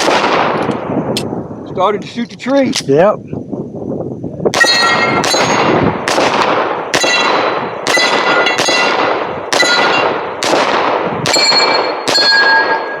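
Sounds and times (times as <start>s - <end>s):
gunfire: 0.0s - 0.8s, 4.5s - 13.0s
bullets clanging on steel plates: 7.0s - 10.2s.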